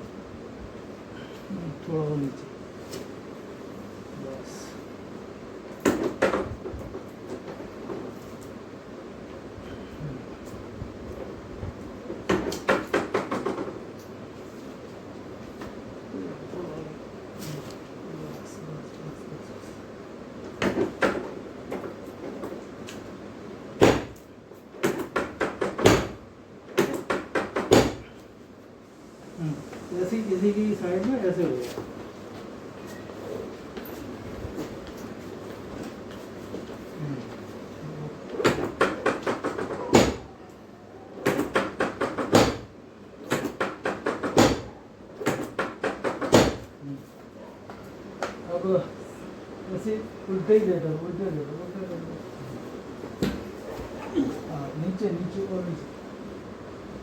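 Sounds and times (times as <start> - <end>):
treatment table knocks and thumps: 5.8 - 8.1, 12.1 - 13.8, 20.6 - 22.6, 23.8 - 28.1, 38.3 - 40.3, 41.2 - 46.8.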